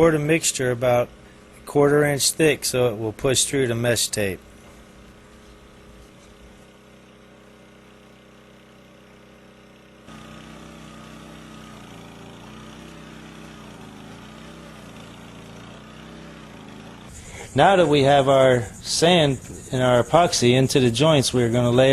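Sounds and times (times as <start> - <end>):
engine idling: 4.4 - 21.9.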